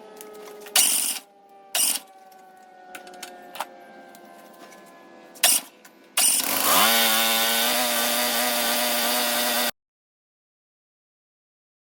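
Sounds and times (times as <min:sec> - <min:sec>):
mower engine revving: 0:05.4 - 0:09.7.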